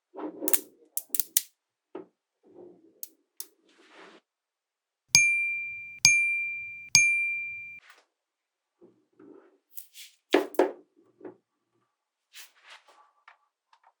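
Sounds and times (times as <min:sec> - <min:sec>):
small clicks: 0:00.5 - 0:01.5
bright metallic dings: 0:05.2 - 0:07.8.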